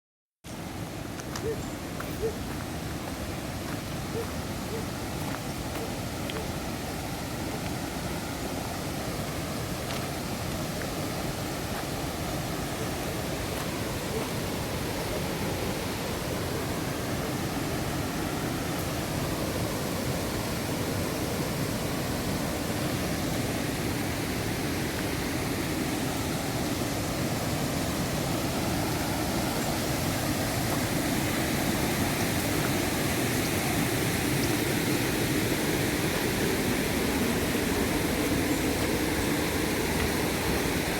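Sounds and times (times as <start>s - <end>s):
rushing river and waterfall: 0.5s - 40.9s.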